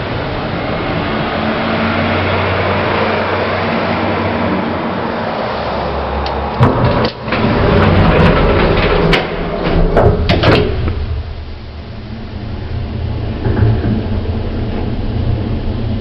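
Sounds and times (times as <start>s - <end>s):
lift humming: 0.0s - 16.0s
lift doors clattering: 6.3s - 16.0s
sharp clunks: 8.1s - 11.1s.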